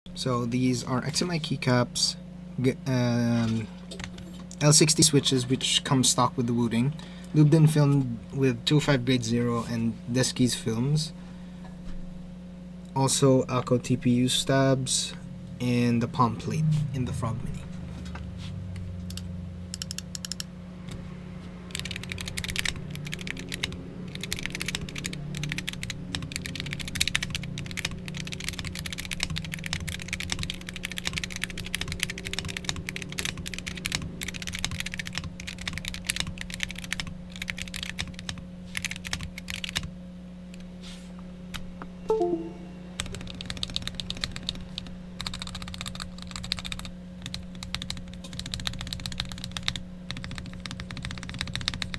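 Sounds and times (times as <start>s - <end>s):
low steady hum: 0.1s - 36.7s, 40.4s - 45.2s
keyboard typing clatter: 19.1s - 20.5s, 21.7s - 39.9s, 43.1s - 51.9s.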